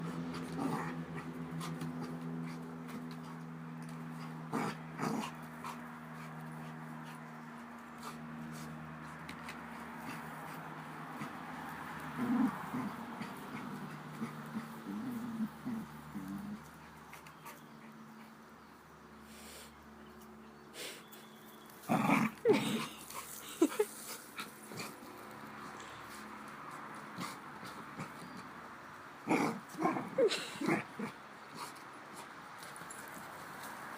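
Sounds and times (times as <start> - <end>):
puppy growling: 0.0 - 7.2, 9.4 - 17.6, 21.9 - 23.8, 29.2 - 31.8.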